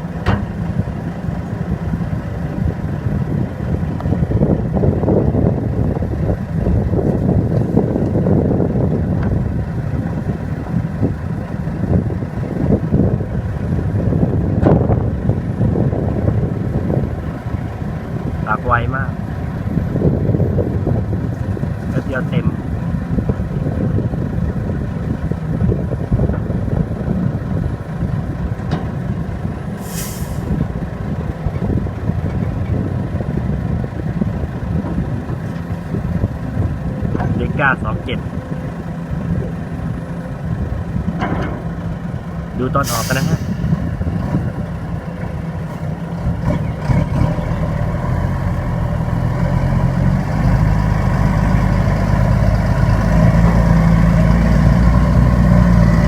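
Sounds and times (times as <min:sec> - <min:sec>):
diesel engine rumble: 0:00.0 - 0:56.0
wind buffeting microphone: 0:00.0 - 0:56.0
air brake hiss: 0:29.8 - 0:30.6, 0:42.8 - 0:43.9.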